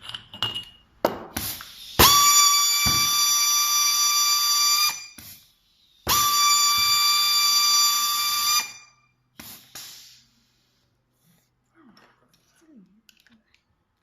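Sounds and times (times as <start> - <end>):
pneumatic tool whine: 1.4 - 10.0.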